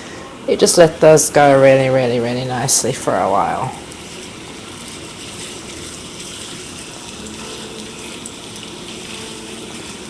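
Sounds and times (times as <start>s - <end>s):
hot dogs sizzling in a frying pan: 3.4s - 10.0s.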